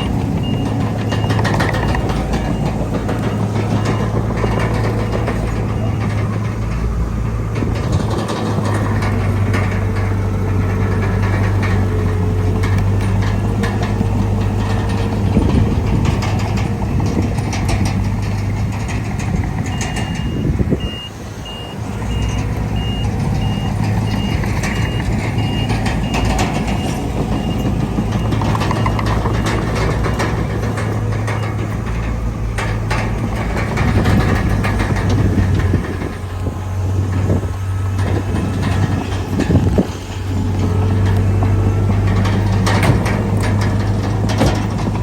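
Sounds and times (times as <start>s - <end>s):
reversing alarm beeping: 0.0s - 6.3s, 19.6s - 30.6s
heavy diesel machinery running: 0.0s - 45.0s.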